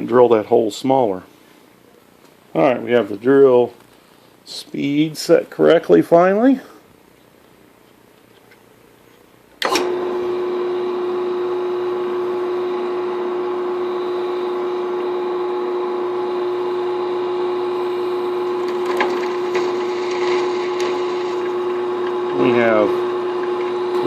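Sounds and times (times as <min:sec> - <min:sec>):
drill press motor humming: 0:09.6 - 0:24.0.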